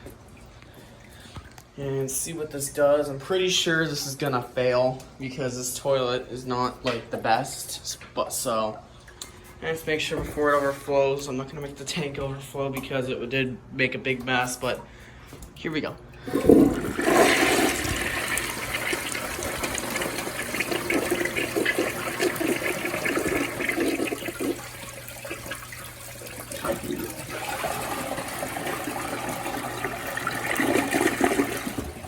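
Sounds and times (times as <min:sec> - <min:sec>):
water draining: 0:14.7 - 0:32.0
toilet flushing: 0:16.1 - 0:32.0.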